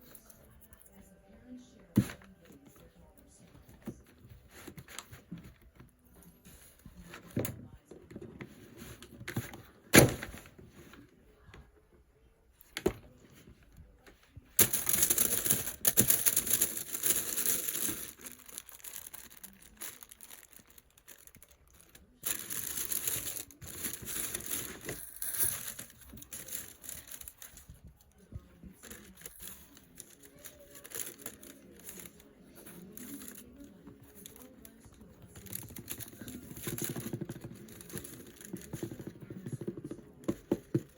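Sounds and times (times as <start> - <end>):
packaging crinkling: 14.6 - 27.7, 28.8 - 34.5.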